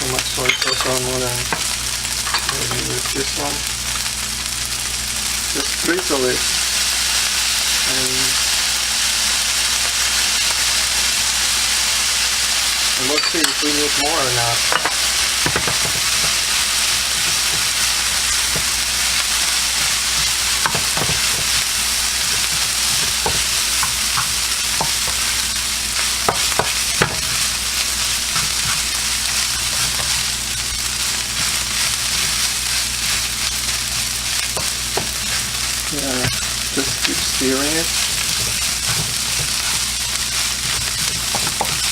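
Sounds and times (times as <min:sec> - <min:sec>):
rice sizzling in a hot pan: 0:00.0 - 0:41.9
spatula scraping a pan: 0:26.0 - 0:41.9.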